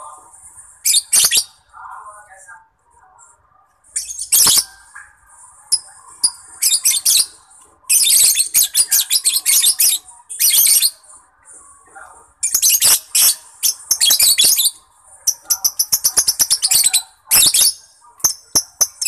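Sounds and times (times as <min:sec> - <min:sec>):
soft bird chatter: 0:00.0 - 0:19.0
lovebird shrill chirps: 0:00.8 - 0:01.6, 0:03.9 - 0:04.9, 0:05.7 - 0:07.3, 0:07.9 - 0:11.0, 0:12.4 - 0:19.0.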